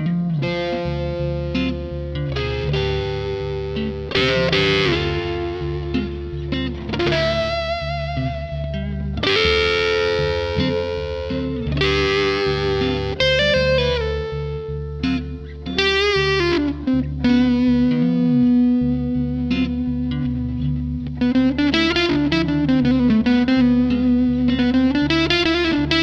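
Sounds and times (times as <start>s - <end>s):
distorted electric guitar notes: 0.0s - 26.0s
low bass tone: 0.8s - 15.7s.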